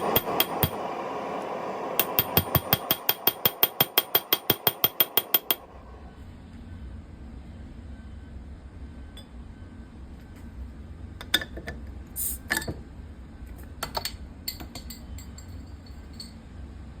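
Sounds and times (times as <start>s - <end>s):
short hiss of bottle opening: 12.2s - 12.5s
metal clinking on glass: 13.8s - 16.4s.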